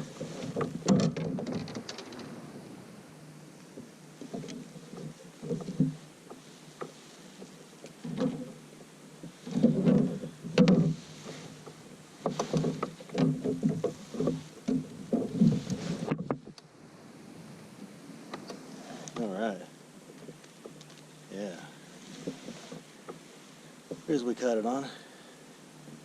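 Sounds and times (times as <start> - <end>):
gear knocking and rustling: 0.0 - 2.4, 3.7 - 16.6.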